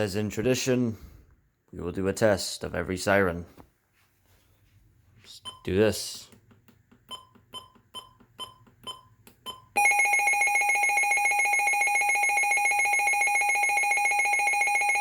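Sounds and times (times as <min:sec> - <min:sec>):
shrill electronic alarm tone: 0:09.8 - 0:15.0.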